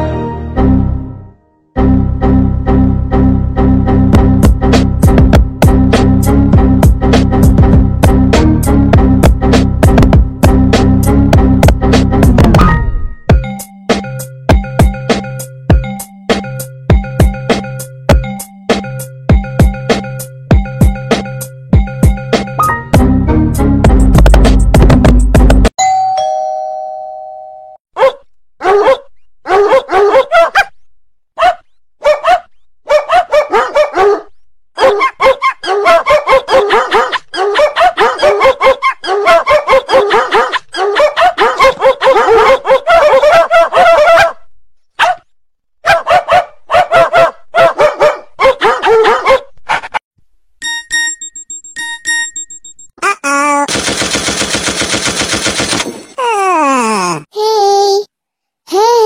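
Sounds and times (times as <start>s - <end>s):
two-tone doorbell chime: 25.8s - 27.8s, 50.6s - 52.9s
dog barking: 28.0s - 30.8s, 31.4s - 50.0s
electronic beep: 50.6s - 52.9s.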